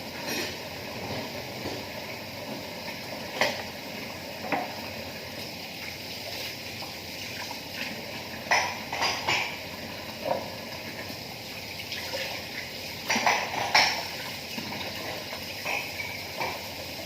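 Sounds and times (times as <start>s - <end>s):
dishes and cutlery clinking: 0.2s - 1.2s, 8.5s - 9.6s, 13.1s - 14.8s, 15.6s - 16.7s.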